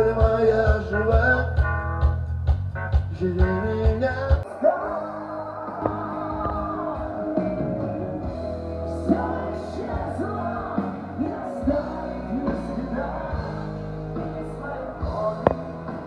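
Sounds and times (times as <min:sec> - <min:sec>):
rock band playing: 0:00.0 - 0:16.0.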